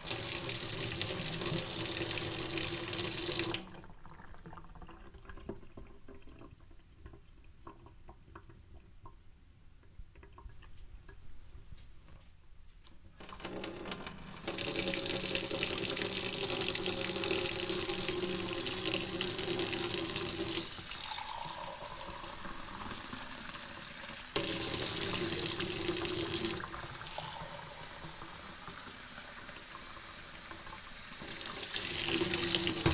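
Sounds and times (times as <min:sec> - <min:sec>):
tap running into sink: 0:30.5 - 0:32.9.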